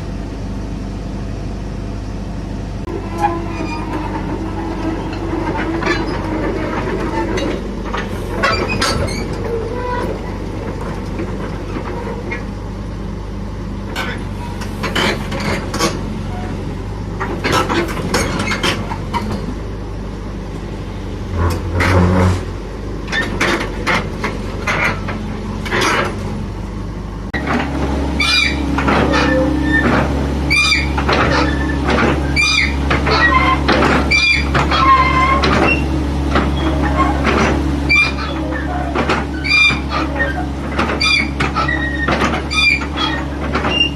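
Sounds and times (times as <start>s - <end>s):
excavator diesel engine running: 0.0s - 43.9s
metallic clanks and knocks: 27.4s - 43.9s.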